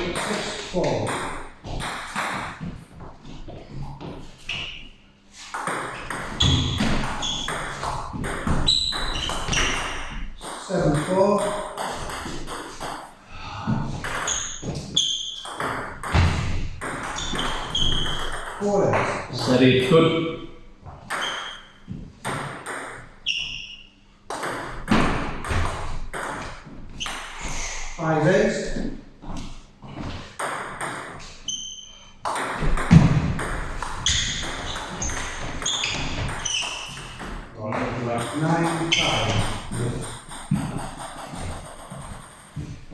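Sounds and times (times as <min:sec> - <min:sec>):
ball bouncing on table: 0:05.5 - 0:13.0, 0:13.9 - 0:19.2, 0:24.3 - 0:27.3, 0:30.4 - 0:31.3, 0:32.2 - 0:42.8
ping pong ball clicking off bats: 0:05.5 - 0:13.1, 0:14.0 - 0:18.7, 0:21.1 - 0:23.1, 0:24.3 - 0:27.4, 0:30.4 - 0:31.2, 0:32.2 - 0:42.6.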